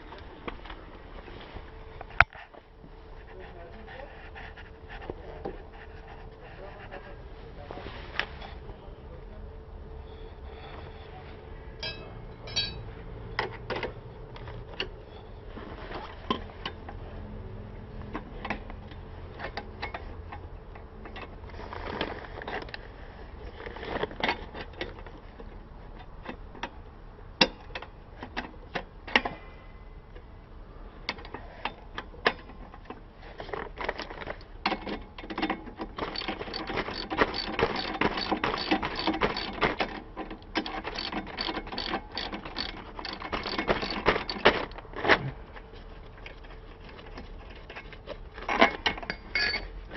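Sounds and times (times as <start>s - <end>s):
hand tools clicking and knocking: 11.8s - 13.9s, 31.1s - 45.3s, 46.2s - 49.8s
ratchet wrench clicking rapidly: 36.0s - 39.8s, 40.6s - 44.5s.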